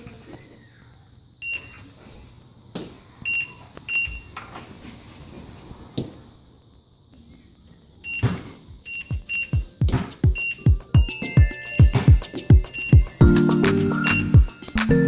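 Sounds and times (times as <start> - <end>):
short high-pitched beeps: 8.9 - 9.6, 10.4 - 15.0.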